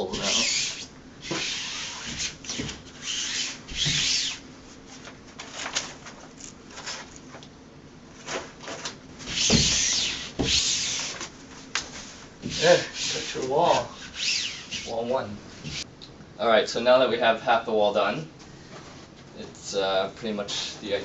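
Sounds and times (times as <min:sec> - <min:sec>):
hands rubbing wallpaper: 0:00.0 - 0:05.1, 0:09.3 - 0:15.0.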